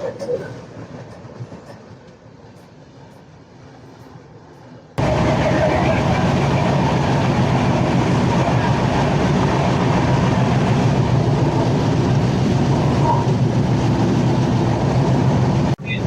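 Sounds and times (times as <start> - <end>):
train rumbling on rails: 0.0 - 16.0.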